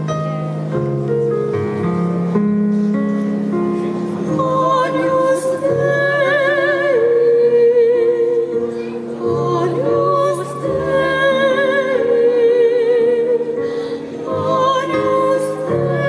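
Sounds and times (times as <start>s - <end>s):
instrumental accompaniment: 0.0s - 16.0s
operatic singing: 9.2s - 16.0s.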